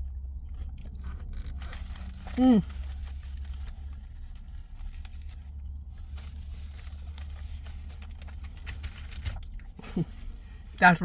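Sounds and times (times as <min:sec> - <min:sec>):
quiet chewing: 0:00.0 - 0:05.4.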